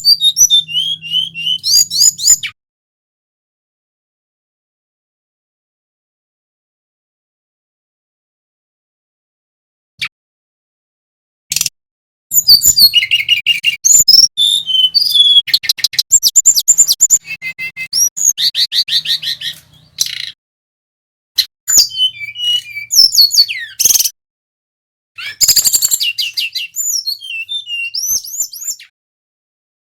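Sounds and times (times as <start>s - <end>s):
bird singing whistles and trills: 0.0s - 2.6s, 12.3s - 20.4s, 21.7s - 24.2s, 25.2s - 28.9s.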